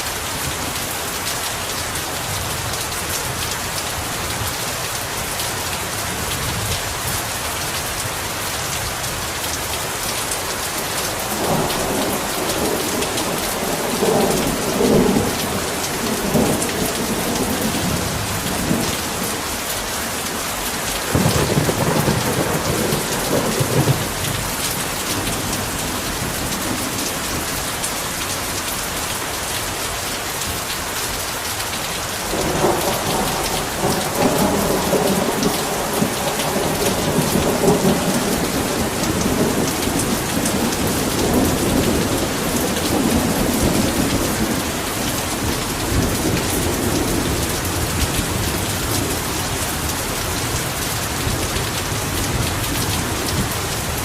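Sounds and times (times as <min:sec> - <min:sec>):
heavy rain falling: 0:00.0 - 0:54.0
thunder rumbling: 0:11.1 - 0:27.5, 0:32.3 - 0:54.0.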